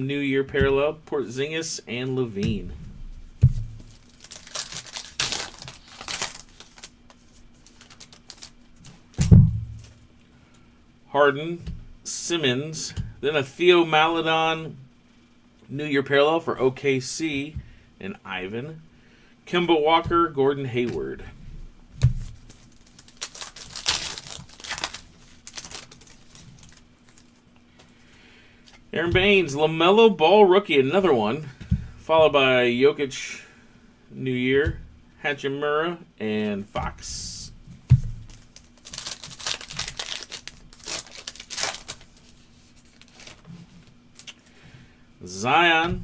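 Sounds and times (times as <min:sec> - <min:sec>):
foil wrapper tearing and crinkling: 0:03.8 - 0:09.1, 0:22.4 - 0:27.3, 0:38.3 - 0:43.5
cards rustling and clicking: 0:03.8 - 0:09.2, 0:22.2 - 0:28.0, 0:38.3 - 0:44.5.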